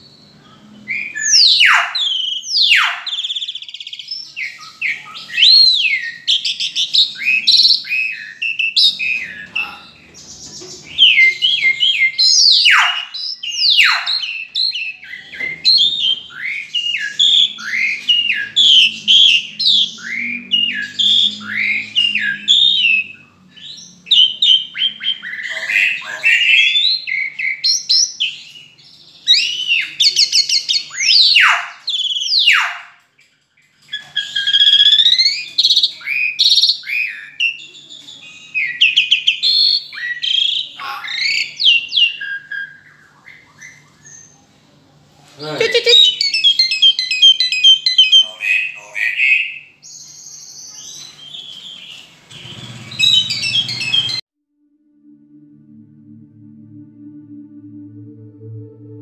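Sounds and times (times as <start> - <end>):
starling singing: 0.0 - 32.9, 45.4 - 54.2.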